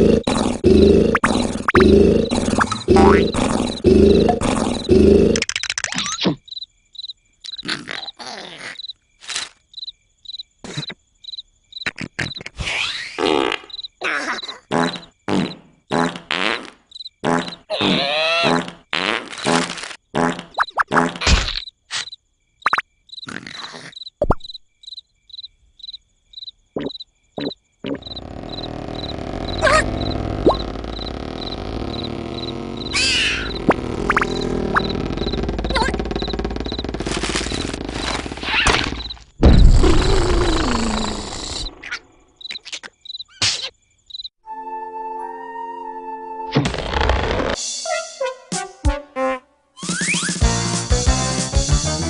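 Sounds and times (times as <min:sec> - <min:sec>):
crickets chirping: 0:00.0 - 0:12.5, 0:13.2 - 0:16.2, 0:16.8 - 0:17.7, 0:21.6 - 0:44.4
cartoon sound effects: 0:17.7 - 0:18.7, 0:29.4 - 0:30.8, 0:32.8 - 0:35.0, 0:35.6 - 0:36.0, 0:49.8 - 0:50.4
comic sound effects: 0:26.8 - 0:36.0
wobbling squeal: 0:28.0 - 0:39.1
rapid clicks: 0:33.5 - 0:39.1.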